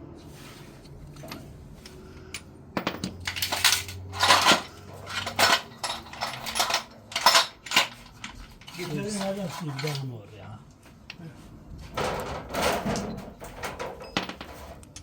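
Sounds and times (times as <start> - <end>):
hard objects clinking: 2.3 - 10.1.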